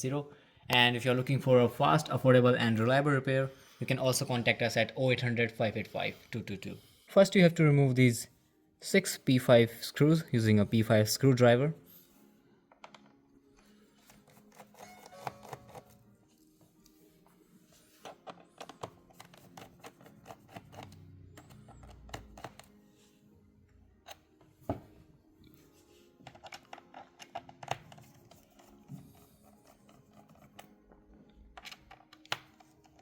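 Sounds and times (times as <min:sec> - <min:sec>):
faint background music: 0:00.0 - 0:33.0
screwdriver clicks and taps: 0:31.6 - 0:33.0.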